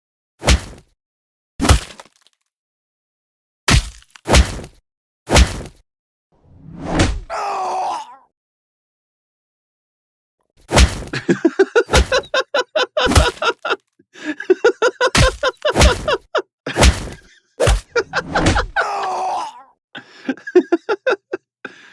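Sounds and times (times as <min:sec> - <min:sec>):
heavy punch impacts: 0:03.7 - 0:05.8, 0:10.7 - 0:11.2, 0:13.1 - 0:13.4, 0:15.2 - 0:16.1, 0:16.7 - 0:17.9
grunts and groans: 0:07.3 - 0:08.3, 0:16.7 - 0:20.1
pained cry: 0:07.3 - 0:08.3, 0:17.9 - 0:19.8
person laughing: 0:11.1 - 0:19.2, 0:20.0 - 0:21.9.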